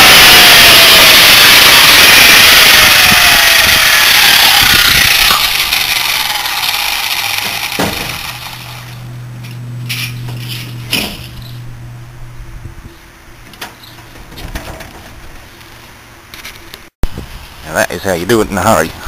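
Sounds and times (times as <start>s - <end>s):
power tool grinding metal: 0.0s - 9.0s
low hum: 0.0s - 13.4s.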